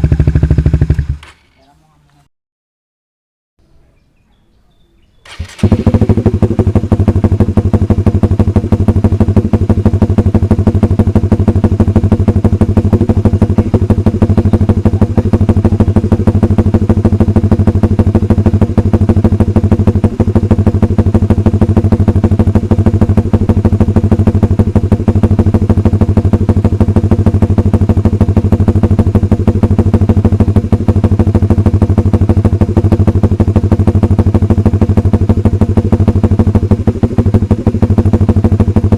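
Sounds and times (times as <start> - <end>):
motorcycle engine starting and idling: 0.0 - 1.7, 5.0 - 38.9.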